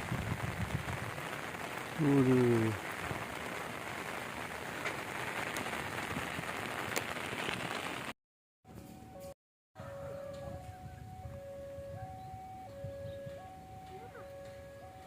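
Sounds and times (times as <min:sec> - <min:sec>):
raindrop taps: 0:00.0 - 0:08.1
steady rain falling: 0:00.0 - 0:08.2.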